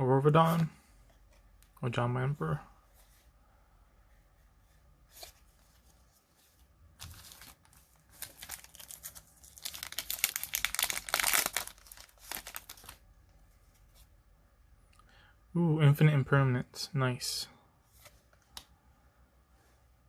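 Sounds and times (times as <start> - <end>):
foil wrapper crinkling and tearing: 7.0 - 13.0.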